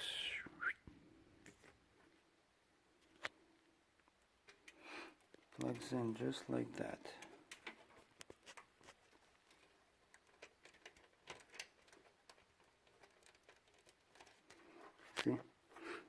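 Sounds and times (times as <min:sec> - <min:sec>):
small plastic connectors clicking: 0:07.2 - 0:15.3.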